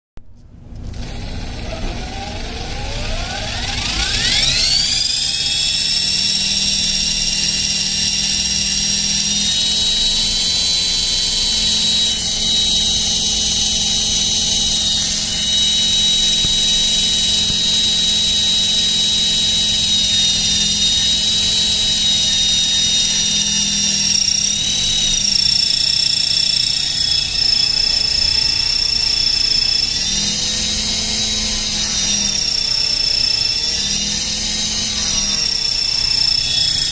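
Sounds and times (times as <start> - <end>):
rc helicopter whine: 0.8 - 36.9.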